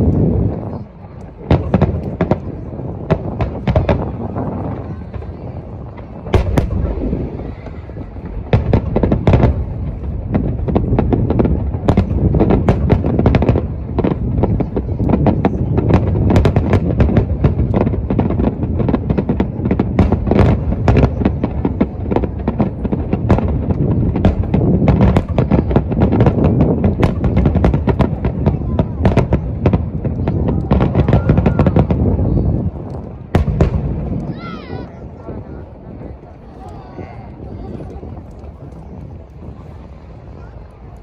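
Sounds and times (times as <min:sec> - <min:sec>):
sharp cracks and crackling: 0:00.0 - 0:34.6
firework shell bursts booming: 0:06.0 - 0:32.1.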